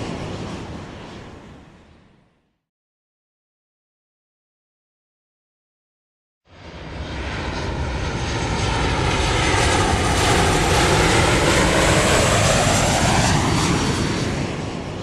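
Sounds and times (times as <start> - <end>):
airliner passing overhead: 0.0 - 2.6, 6.5 - 15.0.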